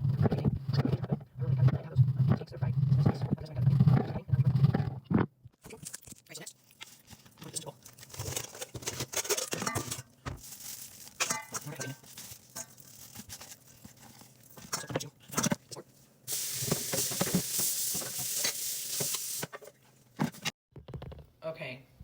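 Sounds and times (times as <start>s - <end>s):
frying sizzle: 16.3s - 19.8s.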